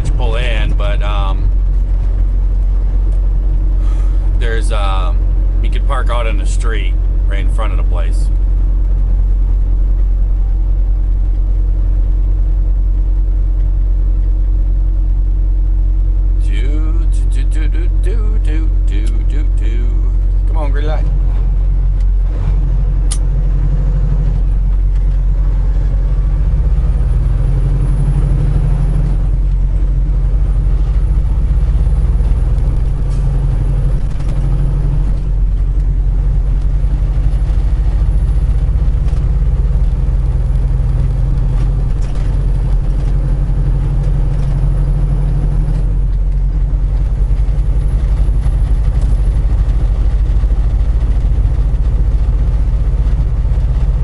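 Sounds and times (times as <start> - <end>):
diesel truck engine under load: 0.0 - 54.0.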